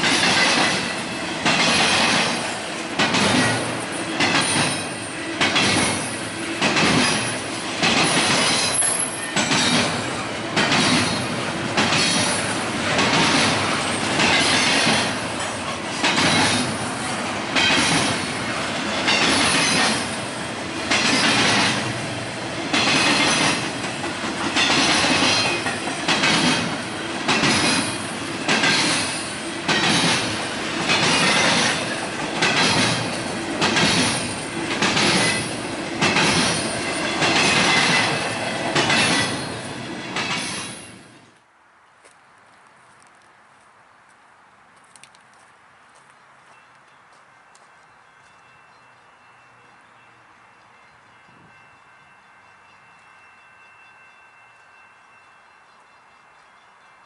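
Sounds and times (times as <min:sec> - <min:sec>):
train wheels clattering over rail joints: 0:00.0 - 0:41.1.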